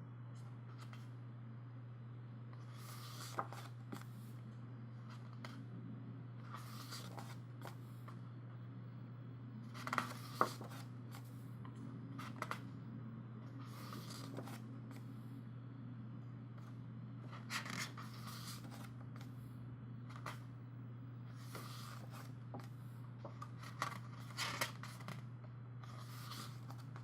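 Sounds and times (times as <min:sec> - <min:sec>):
steady low hum: 0:00.0 - 0:27.0
pages being turned: 0:02.7 - 0:04.1, 0:06.5 - 0:07.8, 0:09.7 - 0:11.3, 0:13.7 - 0:15.0, 0:17.3 - 0:19.3, 0:21.4 - 0:25.3, 0:25.9 - 0:27.0.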